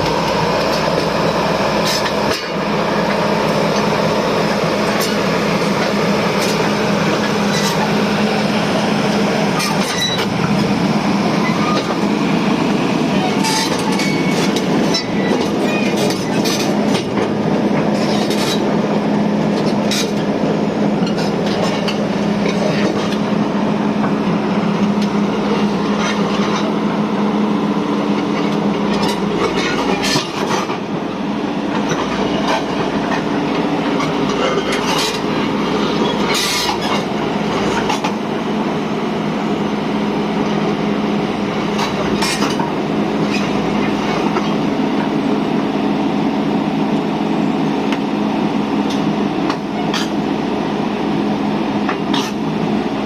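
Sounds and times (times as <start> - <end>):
excavator diesel engine droning: 0.0 - 53.0
metallic clanks and squeaks: 9.6 - 10.3, 13.2 - 16.8, 36.0 - 37.0.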